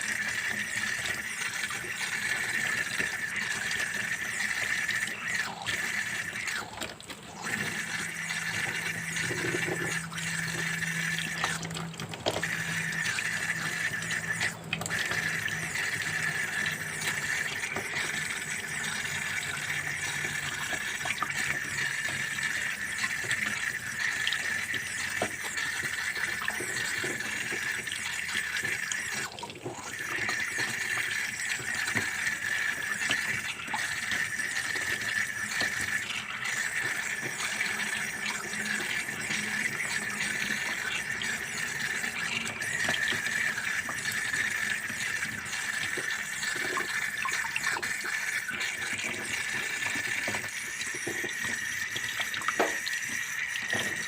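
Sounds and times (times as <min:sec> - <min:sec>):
water running into a sink: 0:00.0 - 0:54.0.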